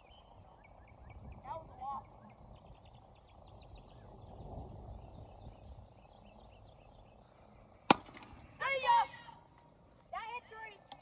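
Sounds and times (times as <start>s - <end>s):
wind rumble on microphone: 0.0s - 8.6s
faint birdsong: 0.0s - 11.0s
ball striking something hard: 7.9s - 8.3s.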